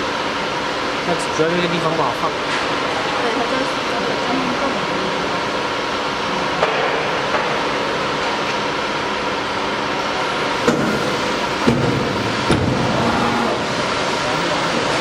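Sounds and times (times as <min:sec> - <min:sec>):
machine humming with faint whine: 0:07.4 - 0:15.0.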